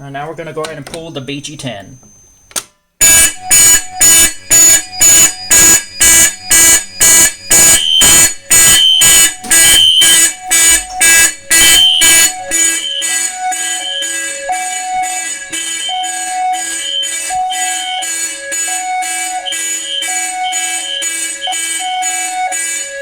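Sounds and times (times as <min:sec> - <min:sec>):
fire alarm horns pulsing: 0:00.0 - 0:23.0
pull station click: 0:00.5 - 0:17.6
higher horn tone: 0:03.0 - 0:23.0.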